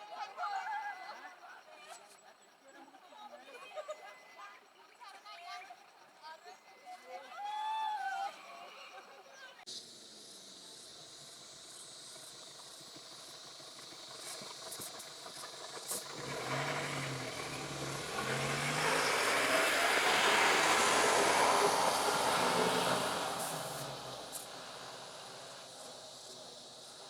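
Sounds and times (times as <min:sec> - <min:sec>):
vehicle approaching: 0:09.8 - 0:27.0.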